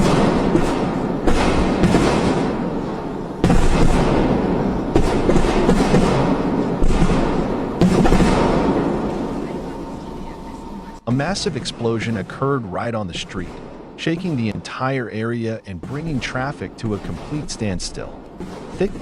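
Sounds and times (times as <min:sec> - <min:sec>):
continuous roar: 0:00.0 - 0:19.0
loud blasts: 0:00.0 - 0:19.0.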